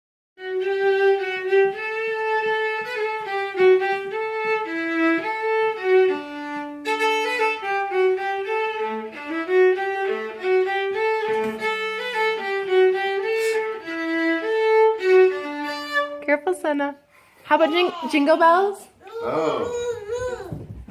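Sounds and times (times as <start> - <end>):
viola bowed melody: 0.4 - 17.0.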